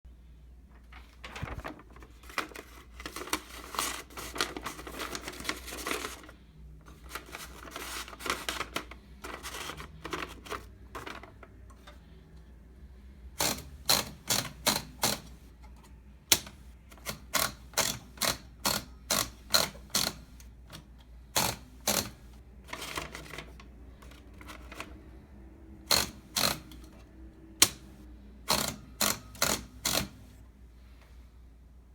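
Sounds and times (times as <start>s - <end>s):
sharp typewriter clicks: 13.4s - 15.4s, 16.3s - 20.4s, 21.3s - 23.2s, 25.8s - 26.9s, 27.5s - 30.3s
typewriter platen ratchet clicks: 13.4s - 15.4s, 16.3s - 20.5s, 21.3s - 22.3s, 25.8s - 27.0s, 27.6s - 30.3s.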